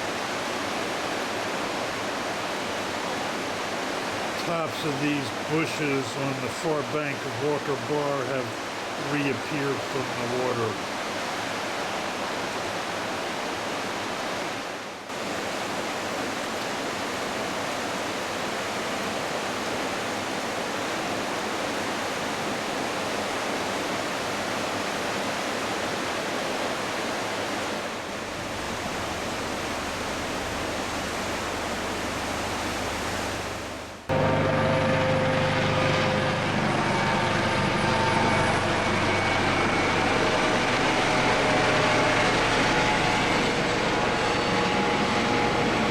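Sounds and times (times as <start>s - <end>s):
river water rushing: 0.0s - 45.9s
engine drone: 28.2s - 45.9s.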